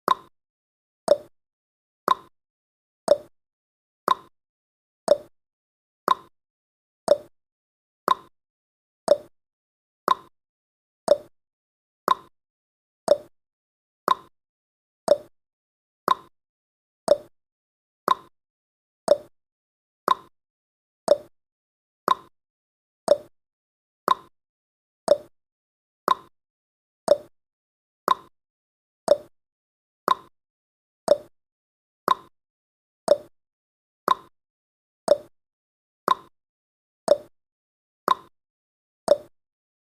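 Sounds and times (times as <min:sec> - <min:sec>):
clock tick-tock: 0:00.1 - 0:00.3, 0:01.1 - 0:01.3, 0:02.1 - 0:02.3, 0:03.1 - 0:03.3, 0:04.1 - 0:04.3, 0:05.1 - 0:05.3, 0:06.1 - 0:06.3, 0:07.1 - 0:07.3, 0:08.1 - 0:08.3, 0:09.1 - 0:09.3, 0:10.1 - 0:10.3, 0:11.1 - 0:11.3, 0:12.1 - 0:12.3, 0:13.1 - 0:13.3, 0:14.1 - 0:14.3, 0:15.1 - 0:15.3, 0:16.1 - 0:16.3, 0:17.1 - 0:17.3, 0:18.1 - 0:18.3, 0:19.1 - 0:19.3, 0:20.1 - 0:20.3, 0:21.1 - 0:21.3, 0:22.1 - 0:22.3, 0:23.1 - 0:23.3, 0:24.1 - 0:24.3, 0:25.1 - 0:25.3, 0:26.1 - 0:26.3, 0:27.1 - 0:27.3, 0:28.1 - 0:28.3, 0:29.1 - 0:29.3, 0:30.1 - 0:30.3, 0:31.1 - 0:31.3, 0:32.1 - 0:32.3, 0:33.1 - 0:33.3, 0:34.1 - 0:34.3, 0:35.1 - 0:35.3, 0:36.1 - 0:36.3, 0:37.1 - 0:37.3, 0:38.1 - 0:38.3, 0:39.1 - 0:39.3.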